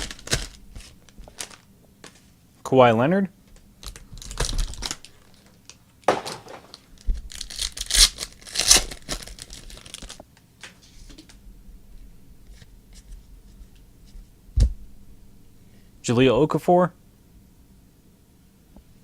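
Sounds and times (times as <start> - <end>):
wrapper tearing and crinkling: 0.0 - 1.7, 3.8 - 5.8, 6.7 - 10.2.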